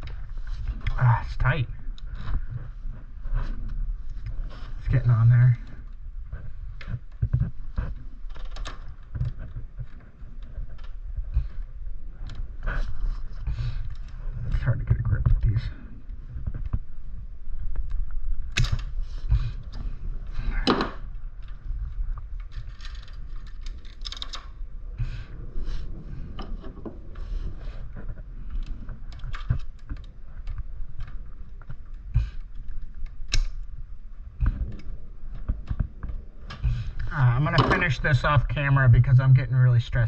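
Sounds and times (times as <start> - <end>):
bicycle chain metallic clicks: 22.5 - 24.6.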